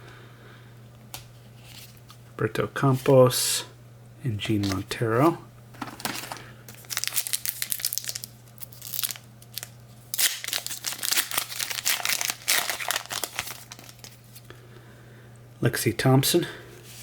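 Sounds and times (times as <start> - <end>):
faint electrical hum: 0.0 - 17.0
cards being handled: 4.5 - 4.9, 5.8 - 14.4
card pack wrapper crinkling: 4.5 - 5.0, 5.8 - 14.4.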